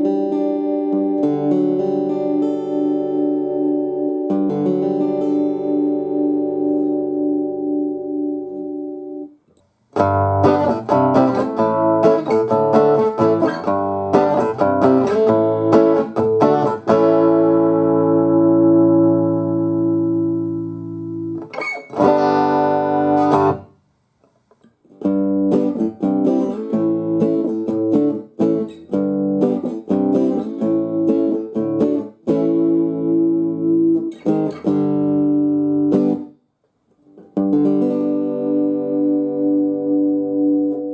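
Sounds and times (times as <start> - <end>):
electric guitar through amplifier: 10.0 - 23.8, 25.0 - 36.2, 37.4 - 40.9.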